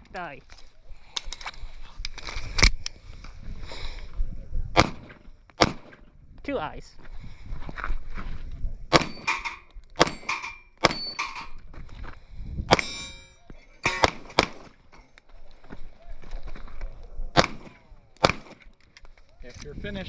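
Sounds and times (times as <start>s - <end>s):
airsoft pistol shots: 4.8s - 6.0s, 8.9s - 11.2s, 12.7s - 13.0s, 13.9s - 14.7s, 17.4s - 18.6s.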